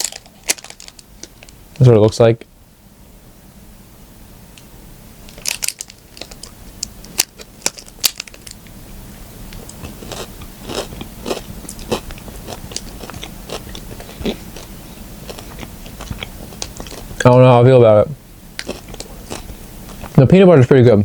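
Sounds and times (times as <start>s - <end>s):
protein bar crunching: 0.0s - 1.5s, 5.3s - 8.6s, 9.6s - 17.2s, 18.6s - 20.1s
chewing: 9.5s - 17.2s, 18.6s - 20.2s.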